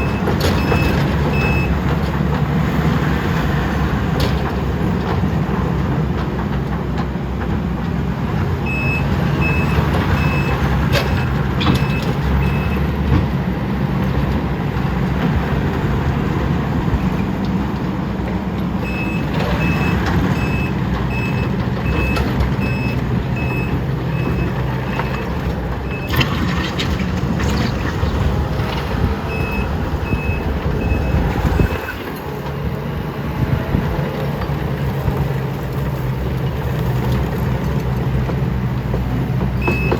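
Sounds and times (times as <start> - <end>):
diesel construction machines running: 0.0 - 39.9
backup alarm beeping: 29.3 - 32.0.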